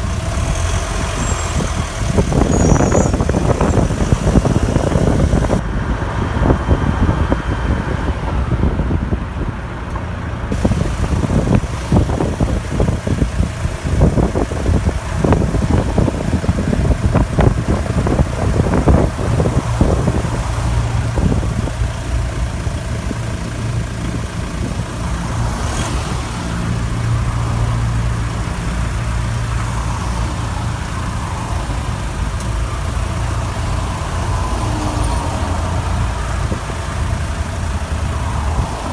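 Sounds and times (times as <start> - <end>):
engine knocks: 0.0 - 5.6, 9.9 - 38.9
engine squeak: 0.0 - 5.6
diesel engine running: 0.0 - 38.9.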